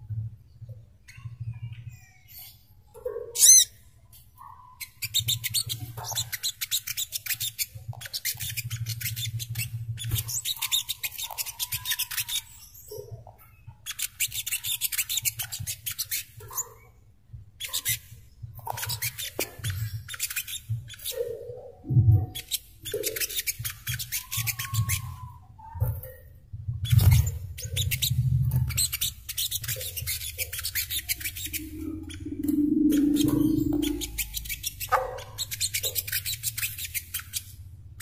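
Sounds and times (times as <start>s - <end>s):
bird chattering twitters: 3.4s - 3.7s, 28.7s - 37.5s
whistled bird note: 31.4s - 34.4s
low hum: 31.4s - 34.6s.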